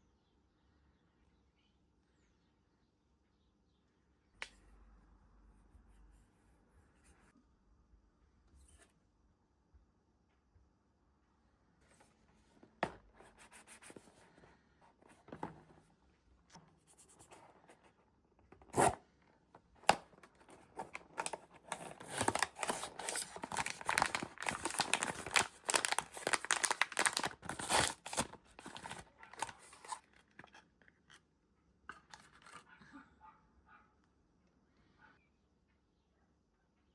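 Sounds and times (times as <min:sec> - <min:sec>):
packaging taps and rustles: 0:19.6 - 0:30.5
wrapping tearing and crinkling: 0:19.9 - 0:30.4.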